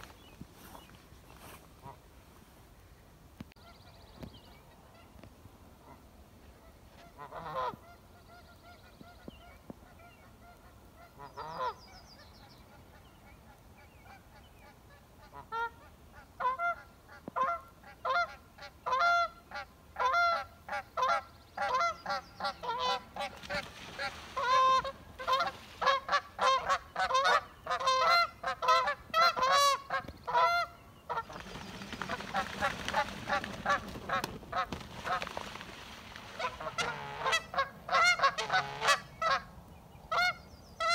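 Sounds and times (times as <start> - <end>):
geese honking: 6.6 - 8.4, 15.2 - 39.5, 40.1 - 40.9.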